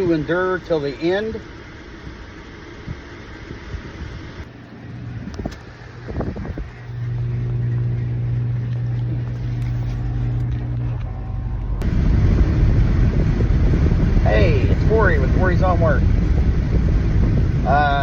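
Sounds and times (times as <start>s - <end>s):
motor humming: 0.0s - 18.0s.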